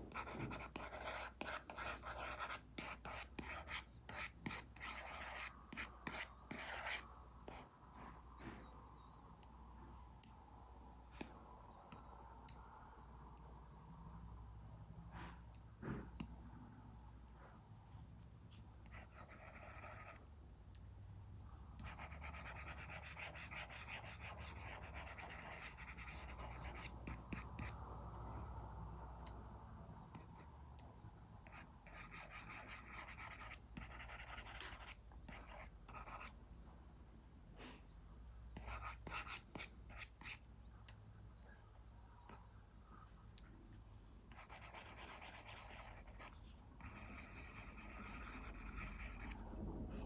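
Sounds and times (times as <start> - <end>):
stylus scratching on screen: 21.8 - 27.8, 43.0 - 49.4.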